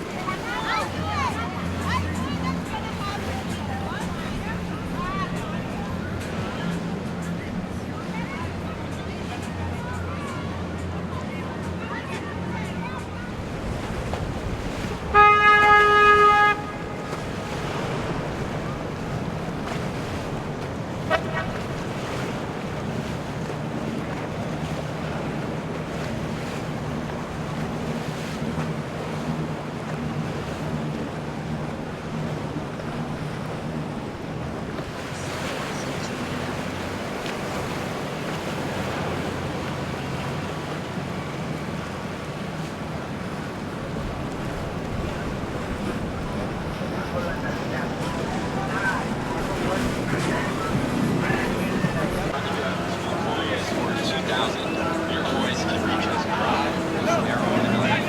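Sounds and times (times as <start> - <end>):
boat engine low hum: 0.0 - 58.0
water noise: 0.0 - 58.0
horn sounding: 15.1 - 17.2, 49.5 - 58.0.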